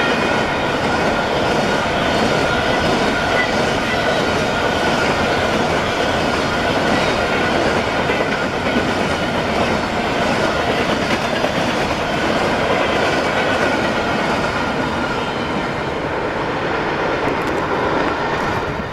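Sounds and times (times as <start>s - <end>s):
train wheels clattering on rails: 0.0s - 18.9s.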